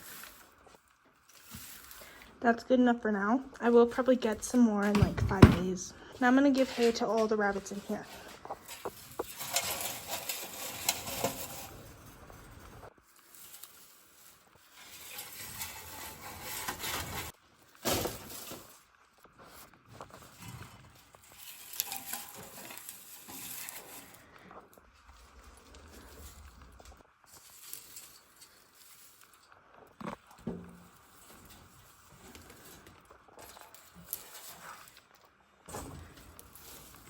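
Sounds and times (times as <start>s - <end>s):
hay rustling: 20.3s - 24.3s, 25.3s - 29.5s.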